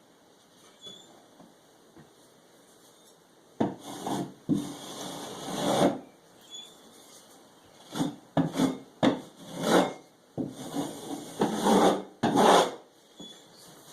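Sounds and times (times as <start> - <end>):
hand tool scraping drywall: 3.7 - 6.0, 7.8 - 12.8.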